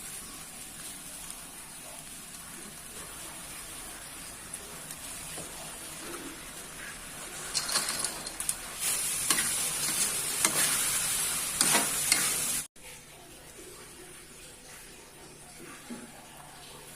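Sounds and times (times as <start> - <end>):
food sizzling in a pan: 0.0 - 12.7
scraping stirring strokes: 6.0 - 12.7.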